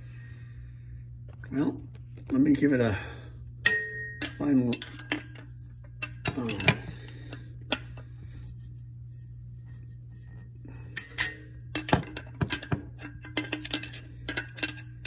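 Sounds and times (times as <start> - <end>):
metal wrench clinking: 3.6 - 6.8, 10.7 - 15.0.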